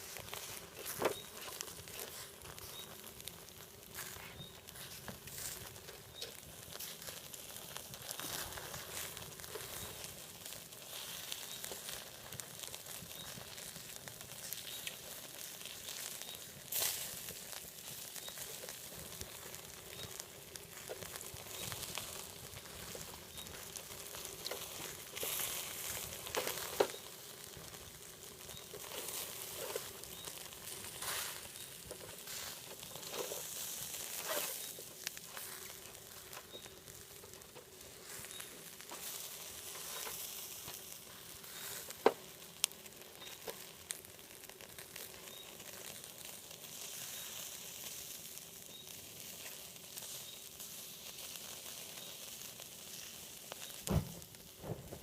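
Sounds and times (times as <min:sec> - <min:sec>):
food sizzling on a grill: 0:00.0 - 0:55.0
sharp pops: 0:53.8 - 0:55.0.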